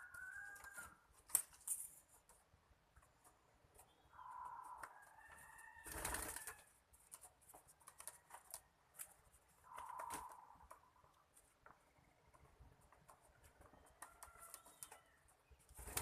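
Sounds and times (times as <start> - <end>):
doves cooing: 9.6 - 11.0.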